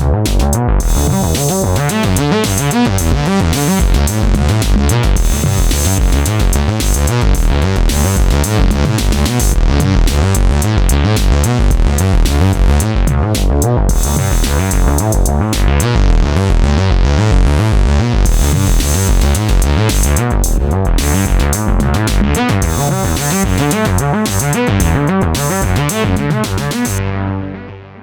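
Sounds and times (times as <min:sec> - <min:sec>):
synthesizer bass line: 0:00.0 - 0:28.0.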